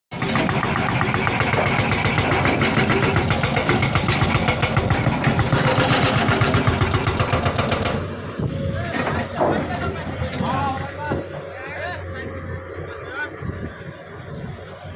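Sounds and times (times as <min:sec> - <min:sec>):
engine running with fast pulse: 0:00.1 - 0:08.6.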